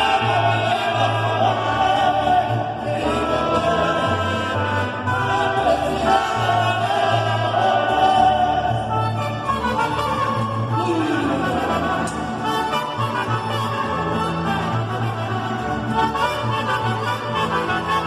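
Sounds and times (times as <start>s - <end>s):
voices singing together: 0.0s - 9.4s
bass line: 0.0s - 18.0s
mariachi band playing: 0.0s - 18.0s.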